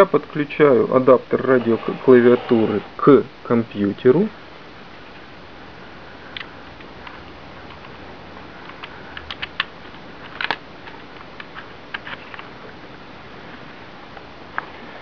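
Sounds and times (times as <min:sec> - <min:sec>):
computer keys clicking: 0:08.6 - 0:12.0.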